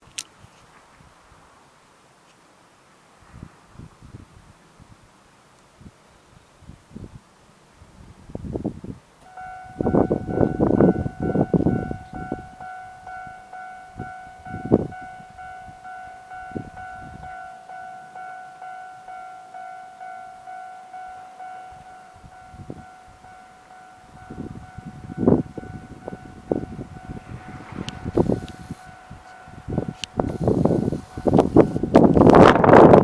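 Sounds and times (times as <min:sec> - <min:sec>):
level crossing warning bell: 0:09.2 - 0:33.0
low rumble: 0:24.0 - 0:32.8.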